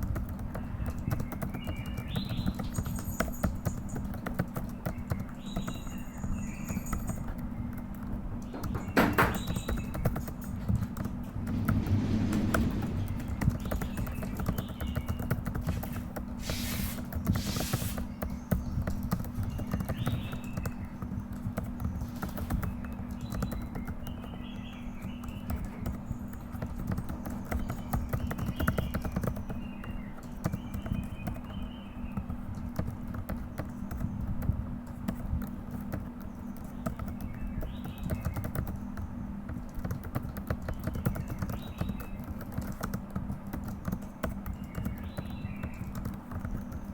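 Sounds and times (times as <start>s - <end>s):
fast typing on keyboard: 0.0s - 46.9s
steady low hum: 10.6s - 18.2s.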